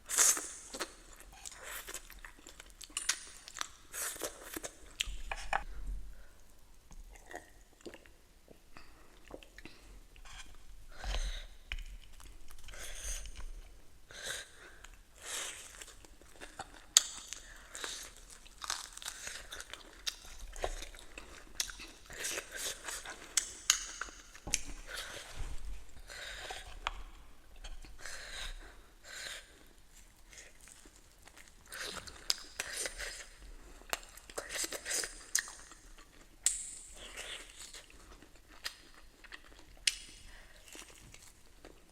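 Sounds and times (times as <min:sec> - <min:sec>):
wet chewing and crunching: 0:00.2 - 0:05.8, 0:14.8 - 0:25.4, 0:29.5 - 0:41.9.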